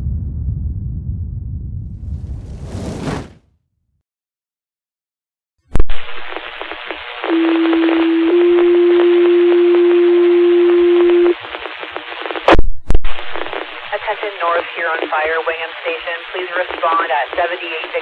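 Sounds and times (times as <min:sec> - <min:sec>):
radio click: 0:05.7 - 0:07.3, 0:11.3 - 0:18.0
radio static hiss: 0:05.7 - 0:18.0.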